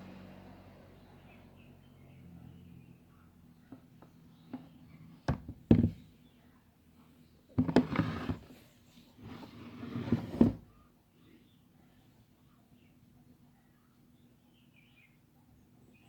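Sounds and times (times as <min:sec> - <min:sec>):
scraping rustling with knocks: 0:07.6 - 0:10.7.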